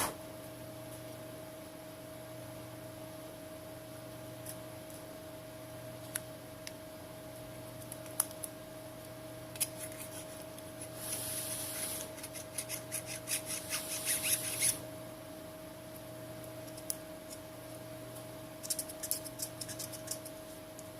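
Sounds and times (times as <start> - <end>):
electrical hum: 0.0 - 20.9
scraping and rubbing strokes: 9.8 - 14.8.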